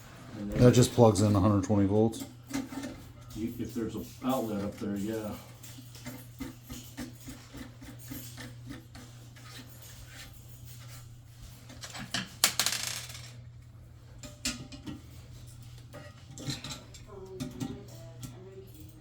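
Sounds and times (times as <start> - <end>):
metal objects clinking: 2.1 - 13.4.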